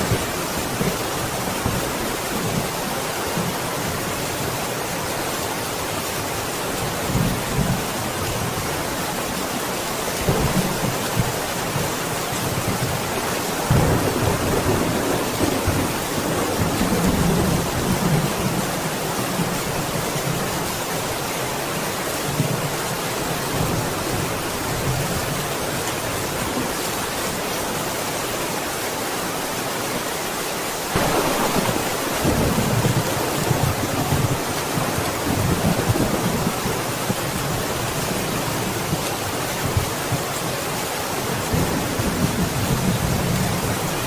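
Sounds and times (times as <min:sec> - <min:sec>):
heavy rain: 0:00.0 - 0:44.0
rolling thunder: 0:30.9 - 0:37.6.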